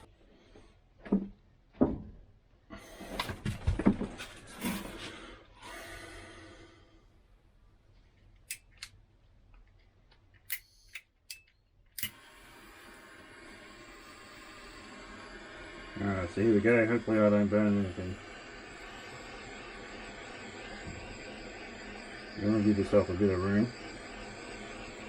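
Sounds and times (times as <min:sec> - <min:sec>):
heat gun fan hissing: 0:02.7 - 0:07.1, 0:10.5 - 0:11.4, 0:12.0 - 0:25.0
sharp clicks: 0:10.4 - 0:12.2.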